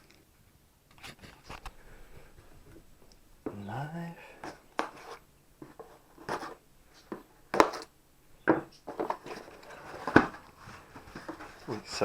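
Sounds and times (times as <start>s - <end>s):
light scraping: 4.4s - 7.9s, 8.8s - 12.0s
packaging clacks and knocks: 4.4s - 7.9s, 8.5s - 12.0s.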